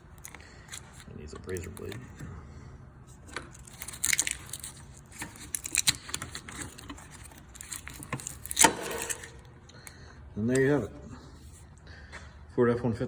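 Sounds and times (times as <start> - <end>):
razor blade scraping sticker: 3.6 - 9.5.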